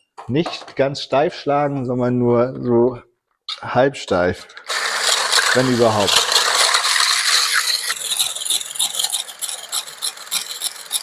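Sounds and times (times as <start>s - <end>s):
electric hand mixer whisking: 4.7s - 11.0s.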